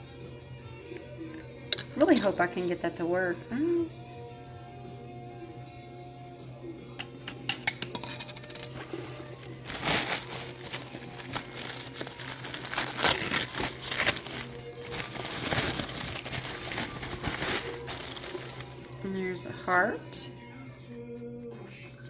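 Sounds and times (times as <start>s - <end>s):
packaging crinkling: 8.6s - 19.1s.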